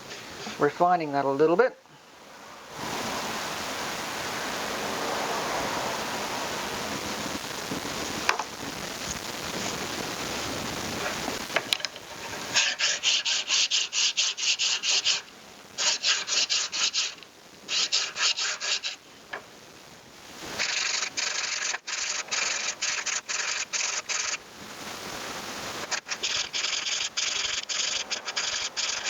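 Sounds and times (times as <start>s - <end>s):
steady hiss: 0.0s - 29.0s
ring being hand-sanded: 12.1s - 19.0s, 20.5s - 24.4s, 25.8s - 29.0s.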